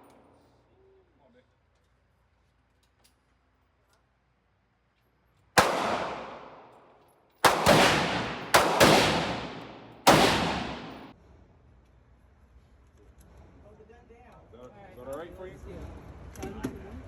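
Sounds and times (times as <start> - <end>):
gunshots with echo: 5.6 - 6.8, 7.4 - 11.1.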